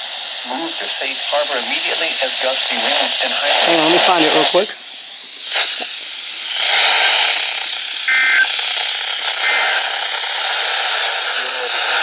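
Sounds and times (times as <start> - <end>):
radio static hiss: 0.0 - 12.0
two-tone data bursts: 6.6 - 12.0.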